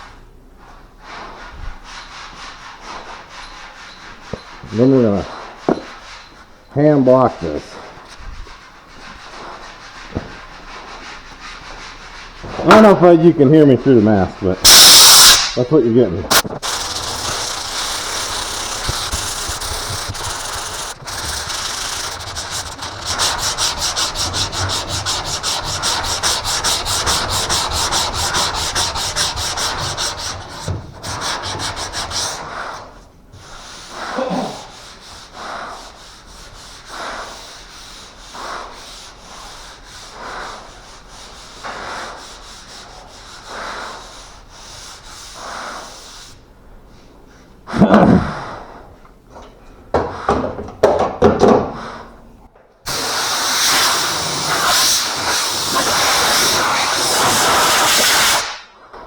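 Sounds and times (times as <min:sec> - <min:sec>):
sanding block rubbing filler: 0:08.7 - 0:13.2, 0:16.3 - 0:32.8, 0:33.4 - 0:46.4, 0:52.9 - 0:58.5.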